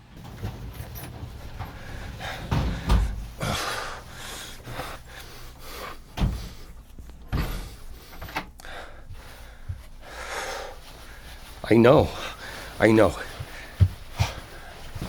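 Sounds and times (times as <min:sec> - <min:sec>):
door opening and shutting: 0:00.0 - 0:04.9, 0:06.1 - 0:08.6
rustling: 0:09.1 - 0:15.0.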